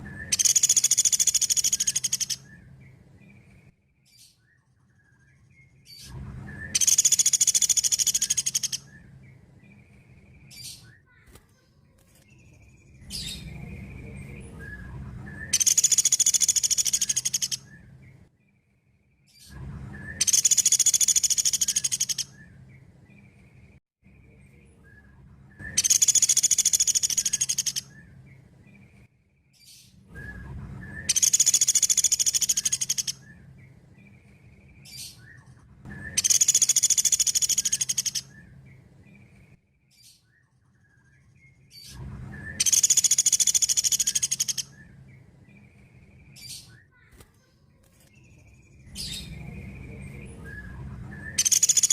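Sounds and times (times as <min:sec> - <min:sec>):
bird high-pitched trills: 0:00.0 - 0:02.7, 0:06.6 - 0:09.1, 0:15.4 - 0:17.8, 0:20.0 - 0:22.6, 0:25.6 - 0:28.2, 0:30.9 - 0:33.4, 0:34.9 - 0:38.6, 0:42.5 - 0:45.6, 0:51.3 - 0:51.9.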